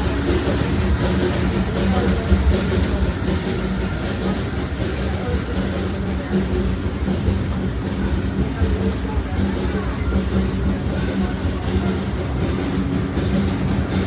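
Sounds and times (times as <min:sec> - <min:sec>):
train wheels rumbling on rails: 0:00.0 - 0:14.0.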